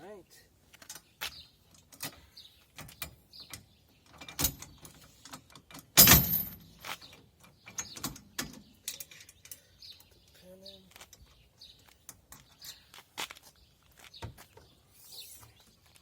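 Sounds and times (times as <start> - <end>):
birds chirping faintly: 0.0 - 16.0.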